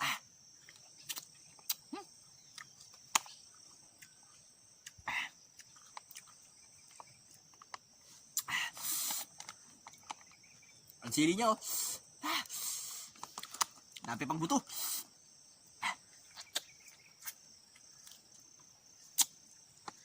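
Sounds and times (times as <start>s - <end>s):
mouth sounds of eating: 0.0s - 2.9s, 3.6s - 9.5s
insects trilling: 0.0s - 20.0s
sharp mouth clicks: 0.7s - 1.9s, 8.3s - 9.6s, 19.1s - 19.4s
sharp breaths: 8.0s - 9.4s, 11.6s - 13.4s, 14.6s - 15.2s.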